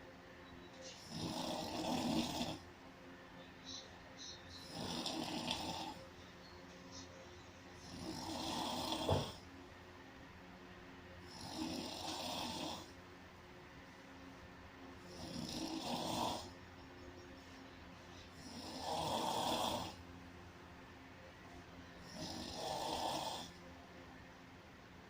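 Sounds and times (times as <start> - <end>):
person snoring: 1.0 - 2.6, 4.6 - 6.0, 7.8 - 9.4, 11.2 - 12.9, 15.0 - 16.5, 18.3 - 20.0, 22.0 - 23.6.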